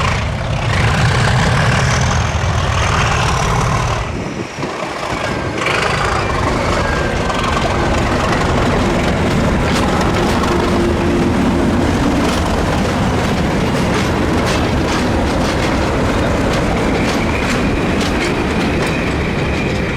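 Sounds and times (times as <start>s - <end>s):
diesel train passing: 0.0s - 19.9s
wheels clicking over rail joints: 4.6s - 19.9s.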